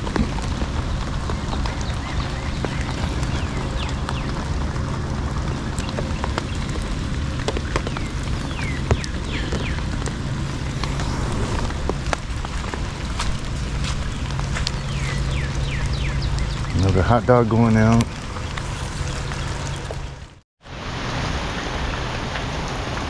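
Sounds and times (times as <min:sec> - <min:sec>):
hard rain falling: 0:00.0 - 0:09.6, 0:17.8 - 0:23.0.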